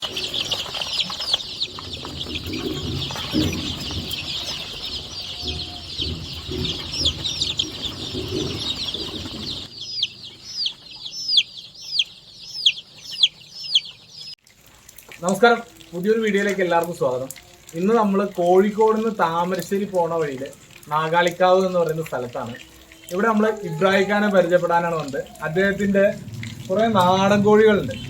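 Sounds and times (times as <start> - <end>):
low clucking: 0.0 - 13.9
chicks peeping: 0.0 - 14.4, 15.2 - 28.0.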